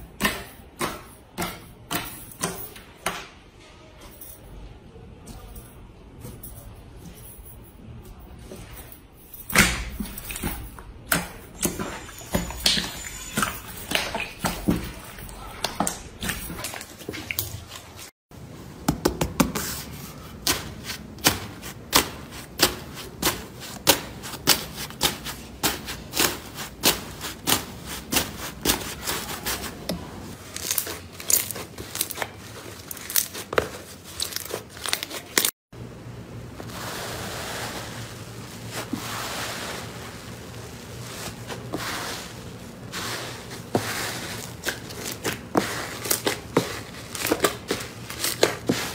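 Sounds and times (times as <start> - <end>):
wet slime squishing: 9.6 - 18.1.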